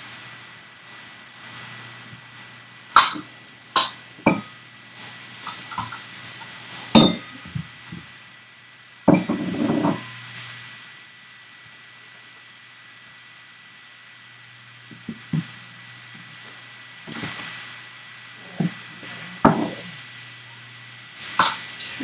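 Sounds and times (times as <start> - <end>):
faint electrical hum: 0.0 - 22.0
dishes clinking and knocking: 7.0 - 7.3, 9.1 - 10.0, 18.5 - 19.9.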